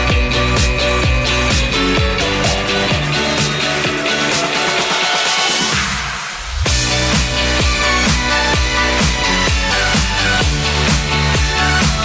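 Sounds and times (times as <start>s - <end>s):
kick drum beat: 0.0s - 6.0s, 6.6s - 12.0s
electronic dance music: 0.0s - 12.0s.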